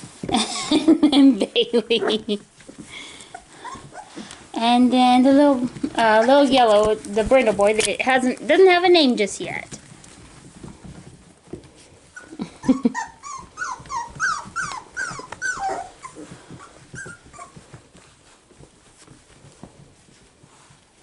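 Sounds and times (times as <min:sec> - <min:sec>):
puppies whimpering: 0:03.1 - 0:04.3, 0:12.0 - 0:17.6.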